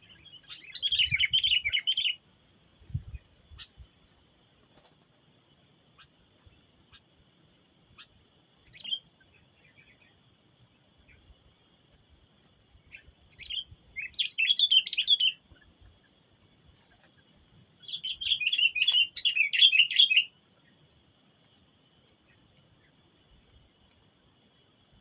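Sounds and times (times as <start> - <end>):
bird chattering song: 0.0 - 2.2, 3.0 - 3.8, 7.9 - 10.2, 12.9 - 15.7, 16.9 - 20.3.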